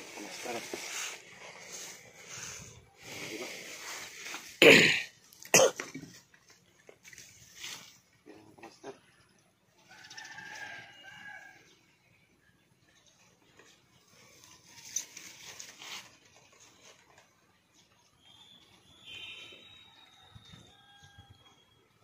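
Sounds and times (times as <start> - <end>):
rustling and handling noise: 0.0 - 8.2, 13.5 - 17.7
faint rooster crowing: 9.7 - 11.8, 19.6 - 22.0.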